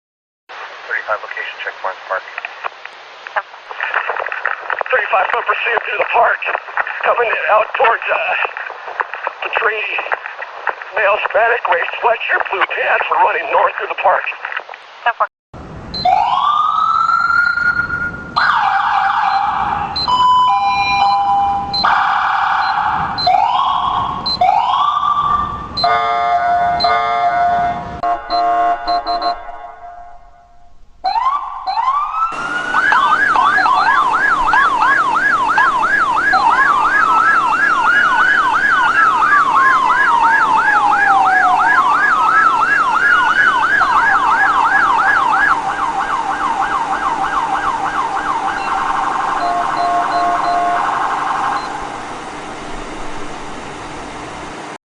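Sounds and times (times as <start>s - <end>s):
rising and falling siren wail: 15.6s - 53.8s
police siren whoops: 16.0s - 29.1s, 31.1s - 51.8s
fast yelp siren: 16.0s - 29.8s, 31.0s - 52.0s
steady horn tone: 25.8s - 30.9s.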